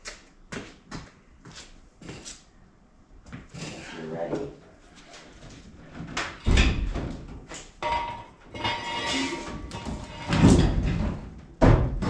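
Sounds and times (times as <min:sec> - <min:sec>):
metal scraping and squeaking: 0:07.8 - 0:10.9.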